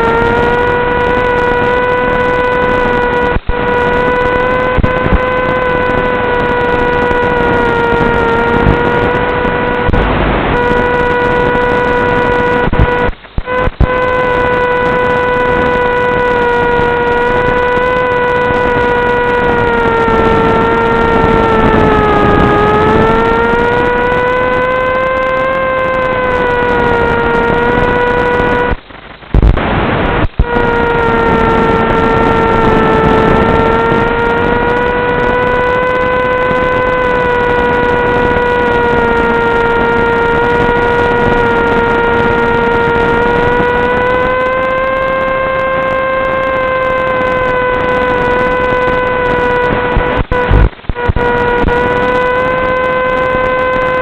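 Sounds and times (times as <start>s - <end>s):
electric motor and propeller whine: 0.0s - 54.0s
sharp loud crackles: 0.0s - 54.0s.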